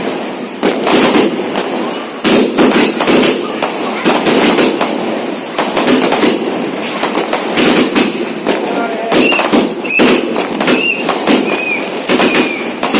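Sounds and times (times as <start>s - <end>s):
firework whistles: 0.0s - 4.0s, 9.1s - 12.9s
firework bangs: 0.0s - 12.9s.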